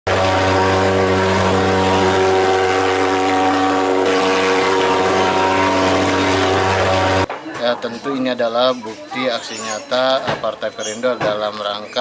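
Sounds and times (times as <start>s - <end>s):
fogging machine pulse-jet drone: 0.1s - 7.3s.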